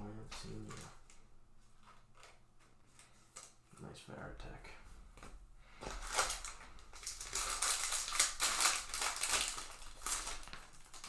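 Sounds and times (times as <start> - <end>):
wrapper being torn and crinkled: 5.9 - 11.0.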